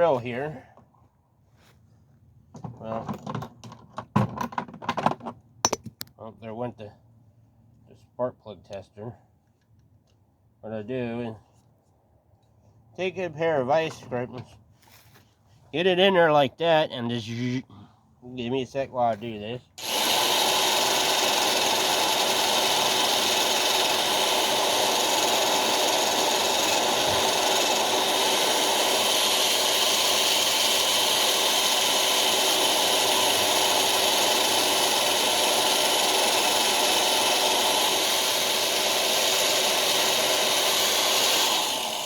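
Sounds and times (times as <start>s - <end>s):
electric drill running: 19.8s - 42.0s.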